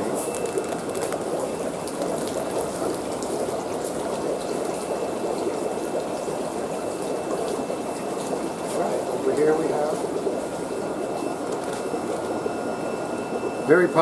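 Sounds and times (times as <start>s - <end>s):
aquarium water bubbling: 0.0s - 14.0s.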